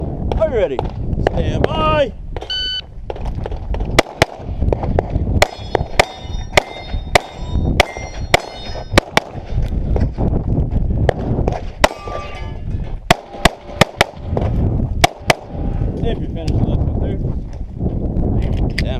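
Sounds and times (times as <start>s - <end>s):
pistol shots: 3.5s - 4.8s, 5.4s - 9.4s, 13.1s - 14.2s
steel targets ringing: 5.4s - 9.0s, 11.9s - 12.7s.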